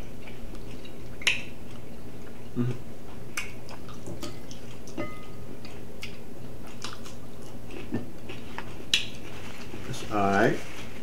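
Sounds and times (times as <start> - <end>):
chewing and biting: 0.0 - 9.7
wet mouth smacks: 1.2 - 1.5.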